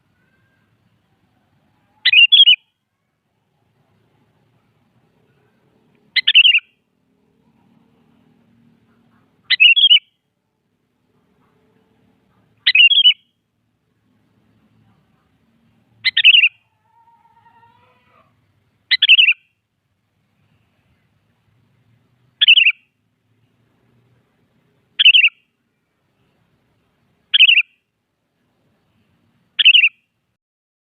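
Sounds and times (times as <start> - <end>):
bird calling: 1.8 - 2.7, 5.2 - 6.8, 8.8 - 10.3, 11.2 - 13.4, 14.8 - 19.5, 22.4 - 22.9, 25.0 - 25.4, 27.3 - 27.8, 29.6 - 30.0.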